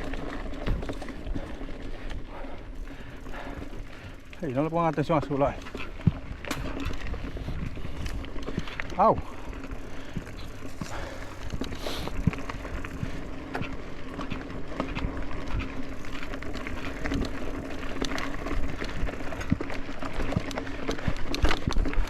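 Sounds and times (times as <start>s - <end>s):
bike clicks and knocks: 0.0s - 22.0s
bike tyre rumble: 0.0s - 22.0s
steady low hum: 5.7s - 19.6s.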